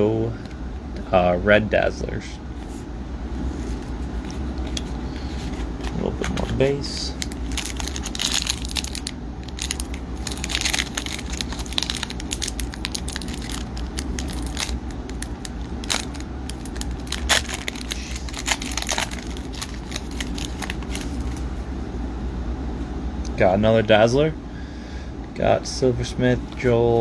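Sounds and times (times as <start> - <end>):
steady low hum: 0.0 - 27.0
cards being shuffled: 3.4 - 21.5
wrapper crinkling and tearing: 3.5 - 21.5.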